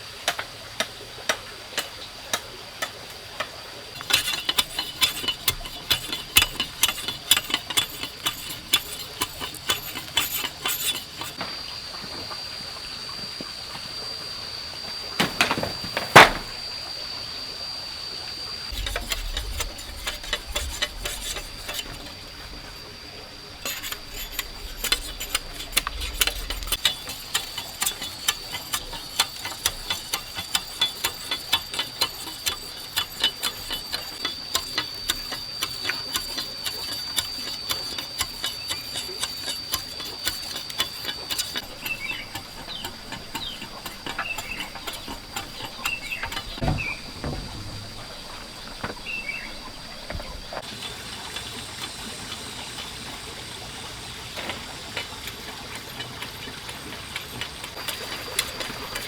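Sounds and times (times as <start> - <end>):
scattered knocks: 15.2 - 16.6, 23.5 - 50.7.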